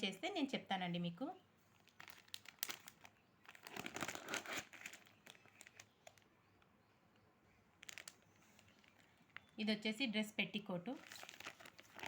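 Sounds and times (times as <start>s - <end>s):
paper pages rustling: 11.1s - 12.0s.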